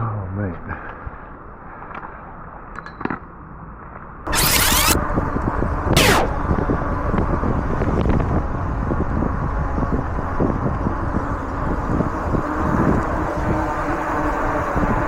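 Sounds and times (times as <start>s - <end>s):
wind buffeting microphone: 5.0s - 15.0s.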